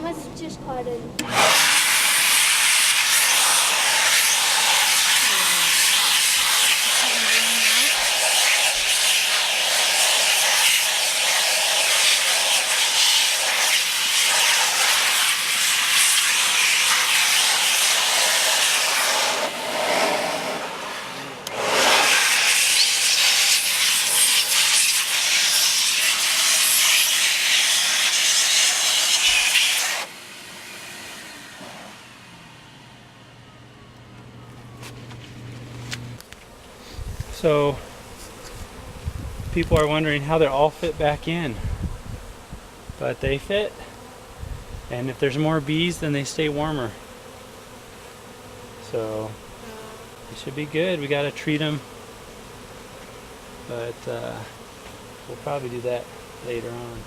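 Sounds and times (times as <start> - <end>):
vacuum cleaner air rush: 1.2 - 33.1, 36.8 - 46.8.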